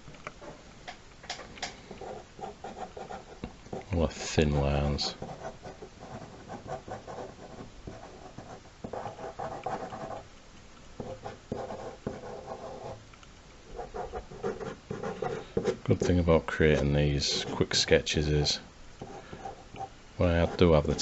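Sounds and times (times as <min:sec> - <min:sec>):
pen scratching on paper: 0:01.9 - 0:10.2, 0:11.0 - 0:13.0, 0:13.8 - 0:17.7.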